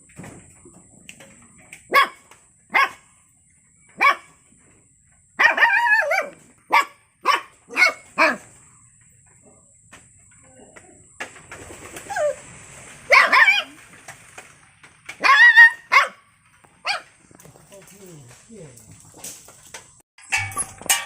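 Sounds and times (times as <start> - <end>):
puppy barking in high yaps: 1.9 - 3.1, 4.0 - 4.4, 5.4 - 8.5, 13.1 - 13.8, 15.1 - 17.1.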